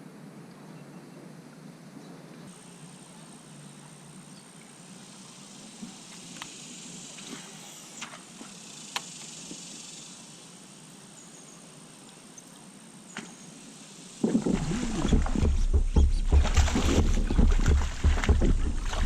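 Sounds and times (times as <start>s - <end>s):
faint clicks: 6.1s - 6.6s.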